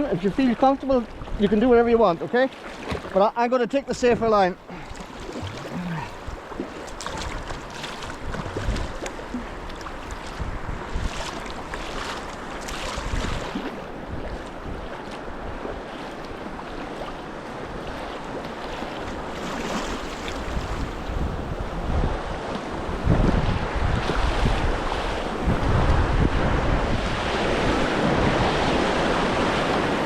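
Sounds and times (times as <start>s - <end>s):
white water rushing: 0.0s - 14.9s, 27.2s - 30.0s
water splashes: 0.0s - 21.7s
wind buffeting microphone: 4.0s - 15.9s, 19.0s - 30.0s.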